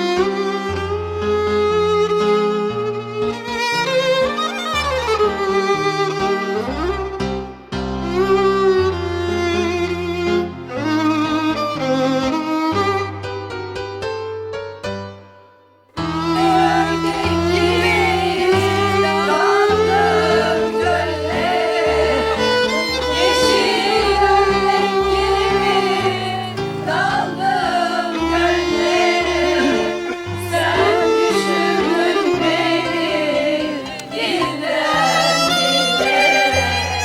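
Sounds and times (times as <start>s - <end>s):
instrumental music: 16.3s - 37.0s.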